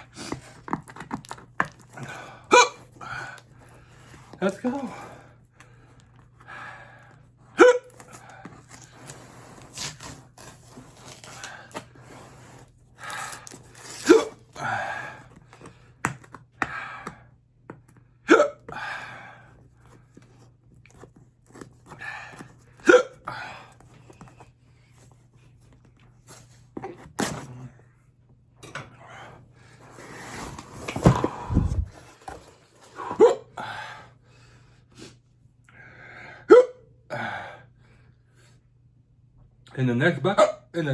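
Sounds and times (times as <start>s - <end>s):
man hiccuping: 2.5s - 2.8s, 7.6s - 7.9s, 14.0s - 14.4s, 18.3s - 18.7s, 22.8s - 23.3s, 36.5s - 36.9s.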